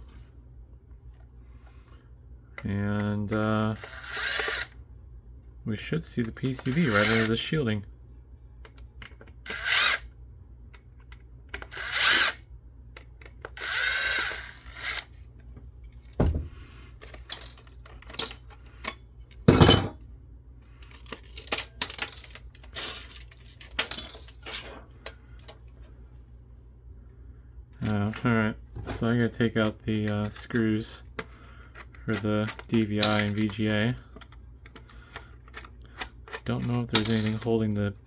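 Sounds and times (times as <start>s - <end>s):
power drill driving out screws: 13.6s - 15.0s
metal parts clicking and knocking: 17.0s - 20.0s, 20.8s - 25.7s, 27.8s - 37.6s.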